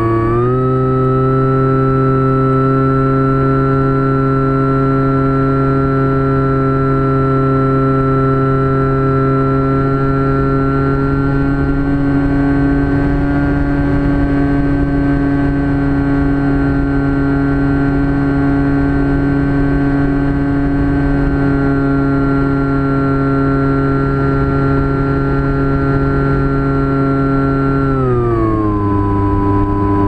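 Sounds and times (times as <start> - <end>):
electric motor and propeller buzzing: 0.0 - 30.0
wind rush on microphone: 8.4 - 30.0.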